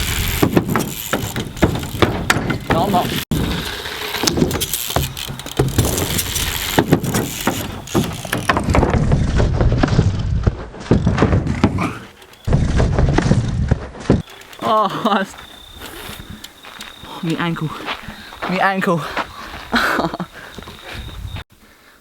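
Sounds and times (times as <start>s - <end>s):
tyres rumbling over plywood: 0.0s - 14.2s
bike knocks and clatters: 0.0s - 14.7s
loud bike landing: 0.0s - 14.8s.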